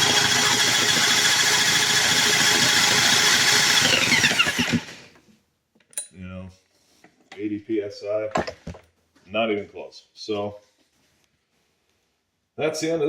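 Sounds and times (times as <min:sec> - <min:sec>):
power drill whining: 0:00.0 - 0:05.2.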